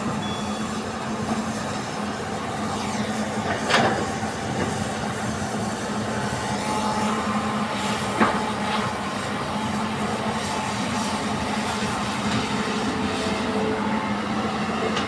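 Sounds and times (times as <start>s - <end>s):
heavy diesel engines running: 0.0s - 15.0s.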